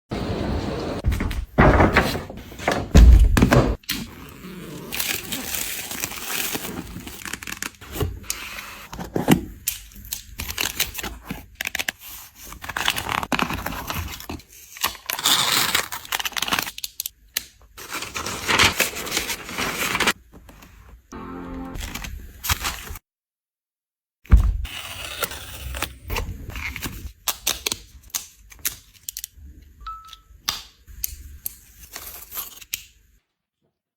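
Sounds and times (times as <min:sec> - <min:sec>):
packaging crinkling and tearing: 0:04.9 - 0:07.8, 0:10.2 - 0:17.1, 0:17.8 - 0:20.2.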